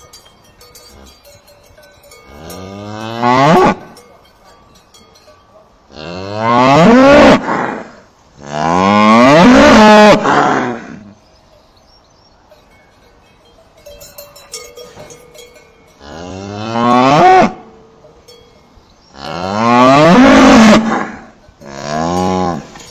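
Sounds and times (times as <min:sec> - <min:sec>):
faint clinking: 0:00.0 - 0:06.0, 0:11.4 - 0:16.7, 0:17.6 - 0:19.2, 0:21.4 - 0:22.9
cow mooing: 0:02.3 - 0:04.0, 0:05.9 - 0:11.0, 0:16.0 - 0:17.6, 0:19.1 - 0:22.9.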